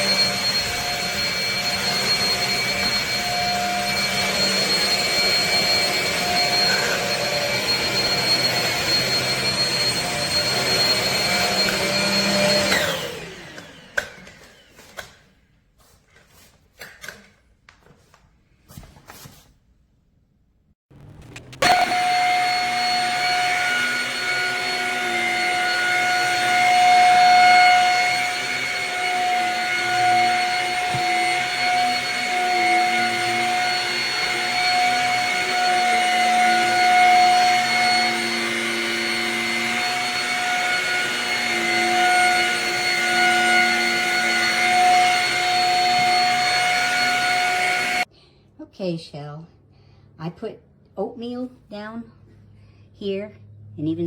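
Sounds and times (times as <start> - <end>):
stick vacuum whining: 0.0 - 15.3, 20.9 - 48.1.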